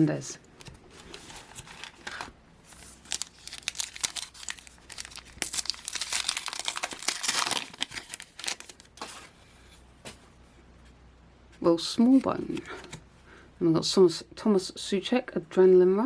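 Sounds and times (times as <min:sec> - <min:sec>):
foil wrapper crinkling and tearing: 0:01.0 - 0:09.0.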